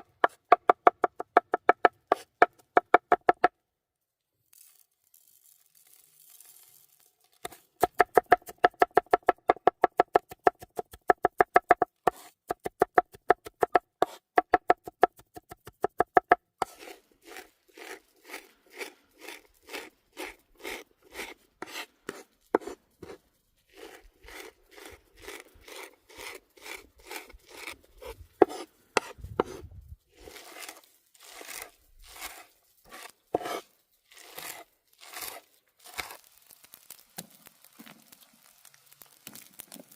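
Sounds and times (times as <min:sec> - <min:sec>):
knife chopping on cutting board: 0:00.2 - 0:03.5, 0:07.8 - 0:16.8, 0:28.4 - 0:29.6
blade rasping strokes: 0:16.6 - 0:36.2.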